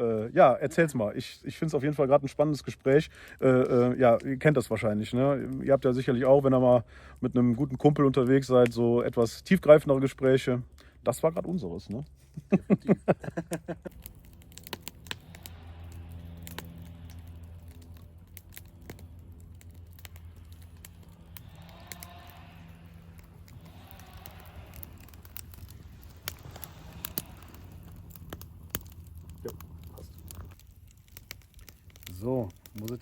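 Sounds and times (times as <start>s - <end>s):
campfire crackling: 0.0s - 33.0s
low steady hum: 0.0s - 33.0s
rustling and crinkling: 13.4s - 33.0s.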